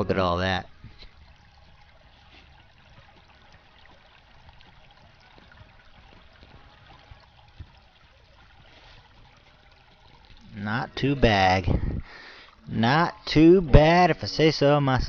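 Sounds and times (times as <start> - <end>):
creek water trickling: 0.0 - 15.0.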